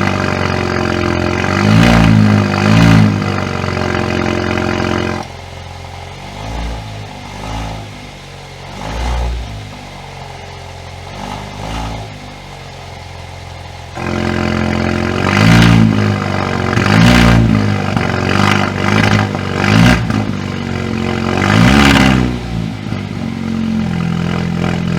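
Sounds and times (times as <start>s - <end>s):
car exhaust revving: 0.0s - 24.9s.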